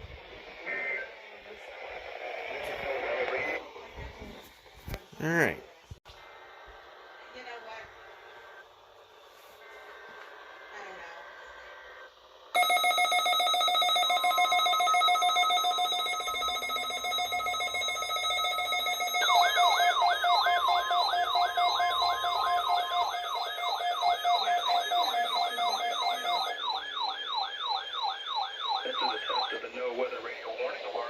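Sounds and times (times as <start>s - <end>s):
pulsing electronic alarm tone: 9.6s - 29.7s
rising siren-like warble: 13.9s - 29.8s.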